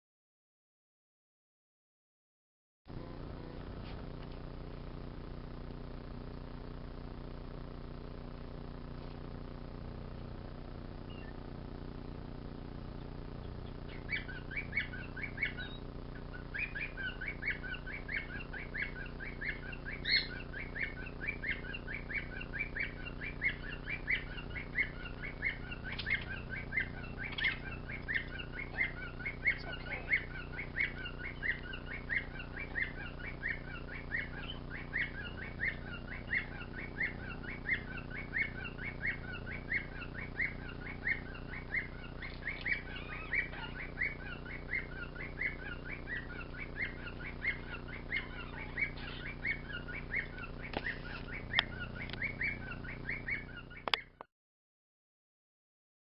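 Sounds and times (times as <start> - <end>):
steady low hum: 2.9 - 54.0
bird chirping: 11.0 - 11.4, 12.9 - 54.3.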